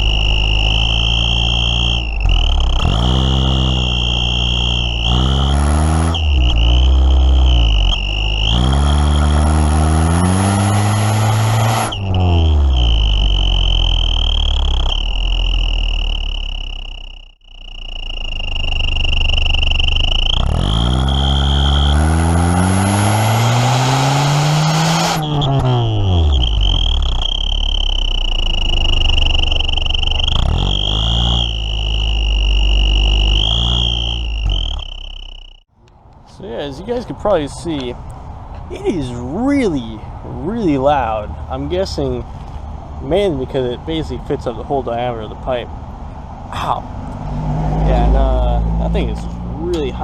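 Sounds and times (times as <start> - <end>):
car engine revving: 0.0 - 35.6, 36.8 - 50.0
exhaust whistle high note: 0.0 - 35.7.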